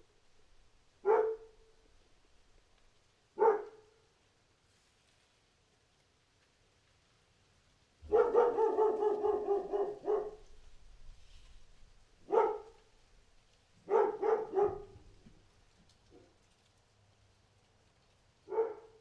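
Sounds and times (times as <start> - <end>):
dog barking: 1.0 - 1.6, 3.4 - 4.0, 8.0 - 10.5, 12.2 - 12.8, 13.8 - 15.1, 18.5 - 19.0.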